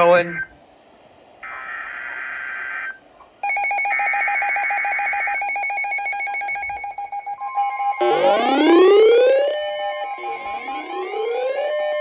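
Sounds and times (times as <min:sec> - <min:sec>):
rapidly pulsing alert beep: 0:03.4 - 0:12.0
rising electronic sweeps: 0:07.4 - 0:12.0.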